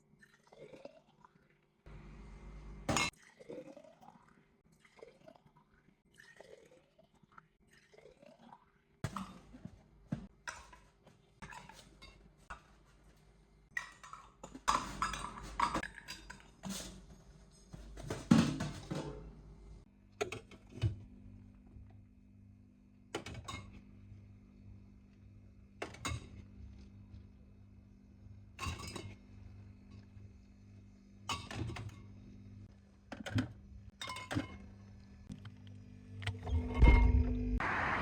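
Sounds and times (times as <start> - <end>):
dishes and utensils clinking: 10.5 - 12.8, 13.8 - 19.3.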